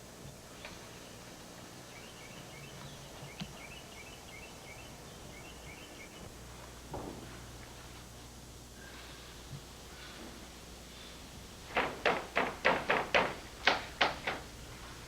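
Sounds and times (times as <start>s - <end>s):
steady low hum: 0.0s - 15.0s
bird chirping: 1.9s - 6.3s.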